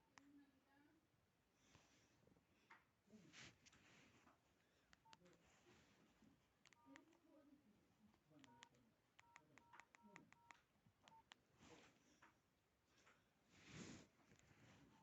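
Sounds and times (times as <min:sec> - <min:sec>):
phone keypad clicks: 0:08.4 - 0:11.4.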